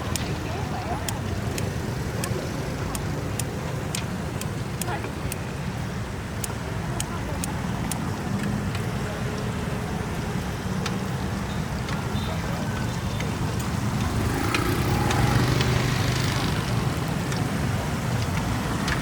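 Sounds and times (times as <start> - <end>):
faint voices: 0.0 - 19.0
light clicks and taps: 6.4 - 11.2, 11.8 - 19.0.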